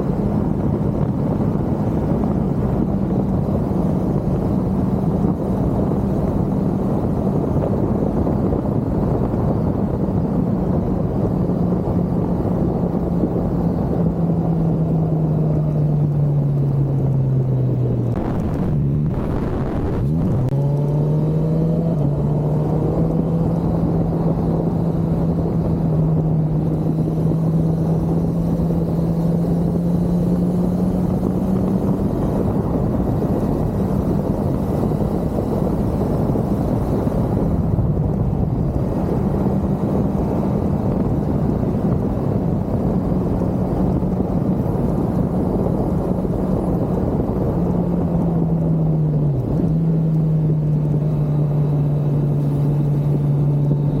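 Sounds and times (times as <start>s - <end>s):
wind rush on microphone: 0.0s - 54.0s
motorcycle engine: 16.2s - 25.4s.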